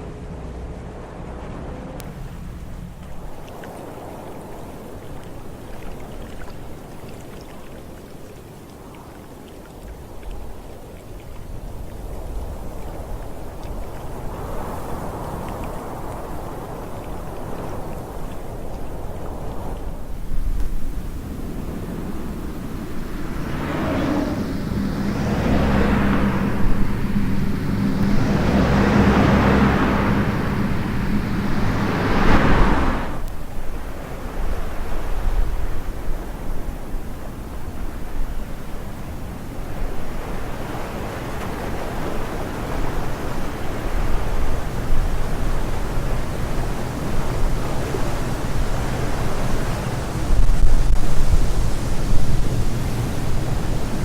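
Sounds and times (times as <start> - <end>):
wind rushing noise: 17.4 - 39.0, 39.6 - 54.0
steady low hum: 20.3 - 33.3
whooshing rush of air: 20.8 - 33.5.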